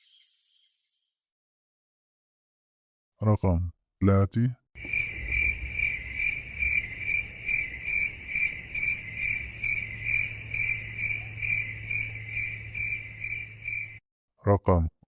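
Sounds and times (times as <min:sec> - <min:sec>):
cricket chirping: 0:04.8 - 0:14.0.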